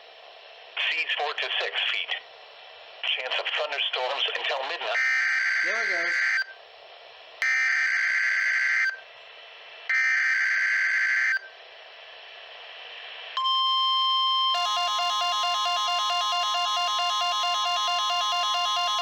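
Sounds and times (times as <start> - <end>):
steady warning alarm tone: 5.0 - 6.6, 7.4 - 9.0, 9.9 - 11.5, 13.4 - 19.0.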